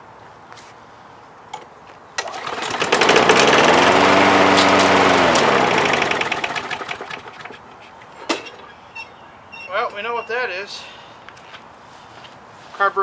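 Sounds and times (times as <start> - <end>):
lawn mower engine running: 2.2 - 7.8.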